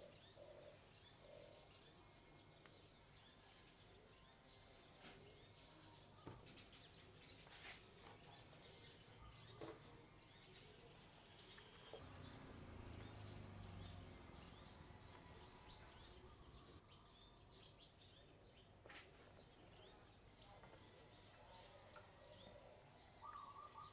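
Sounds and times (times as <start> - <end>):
distant bird chirps: 6.1 - 23.9.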